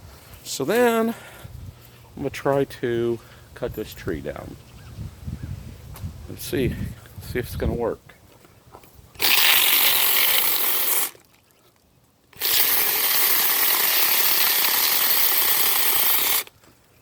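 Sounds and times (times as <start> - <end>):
cordless chainsaw running: 9.2 - 11.2, 12.4 - 16.5.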